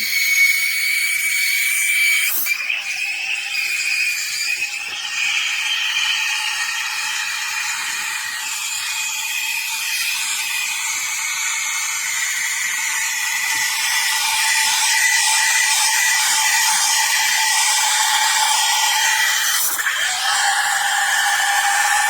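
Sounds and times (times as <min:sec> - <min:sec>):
espresso steam wand hissing: 0:00.0 - 0:22.0.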